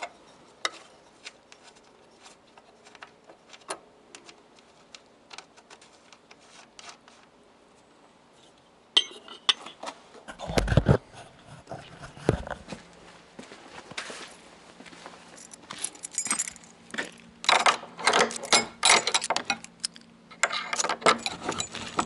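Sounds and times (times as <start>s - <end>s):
metal clinking: 15.4s - 16.8s, 17.5s - 22.0s.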